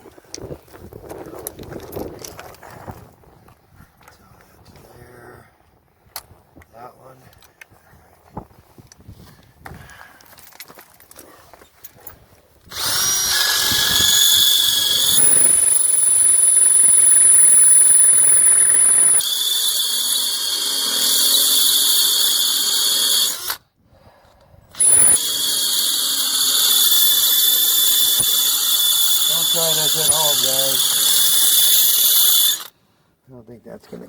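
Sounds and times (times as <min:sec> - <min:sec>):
power drill boring: 0:12.7 - 0:23.6, 0:24.7 - 0:32.7.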